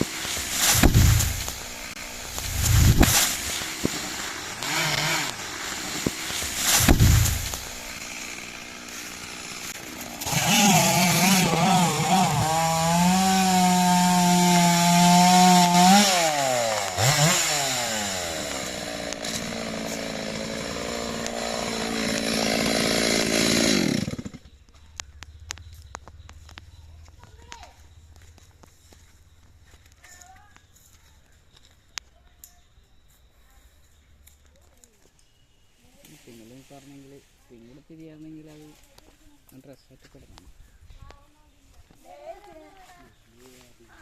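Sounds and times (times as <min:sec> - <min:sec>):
chainsaw cutting wood: 0:00.0 - 0:24.6.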